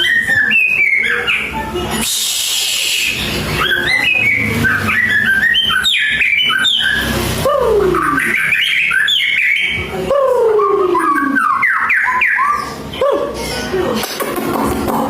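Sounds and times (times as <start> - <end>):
songbird singing whistled notes: 0.0 - 7.2, 7.9 - 9.9, 10.7 - 12.8.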